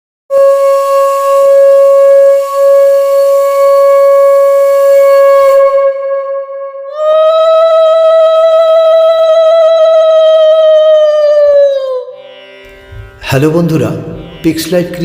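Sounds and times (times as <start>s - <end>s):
conch shell blown: 0.3s - 9.7s.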